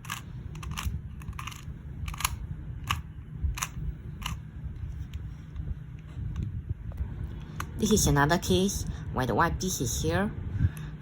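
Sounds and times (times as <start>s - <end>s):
speed cube clicking: 0.0s - 4.4s
low steady hum: 0.0s - 11.0s.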